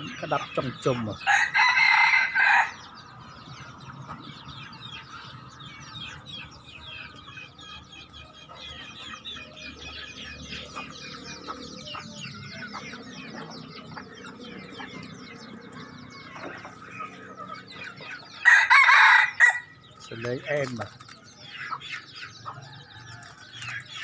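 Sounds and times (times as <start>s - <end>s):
chicken calling loudly: 18.4s - 19.8s.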